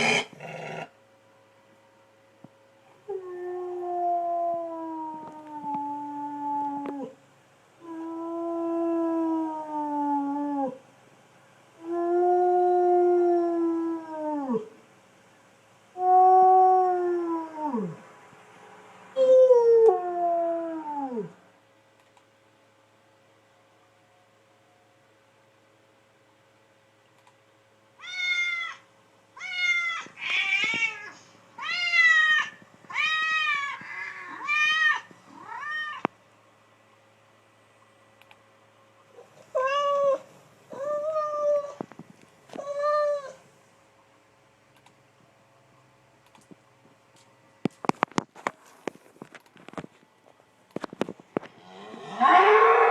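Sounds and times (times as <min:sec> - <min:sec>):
cat meowing: 0:28.0 - 0:28.8, 0:29.4 - 0:36.1
dog howling: 0:51.8 - 0:52.9.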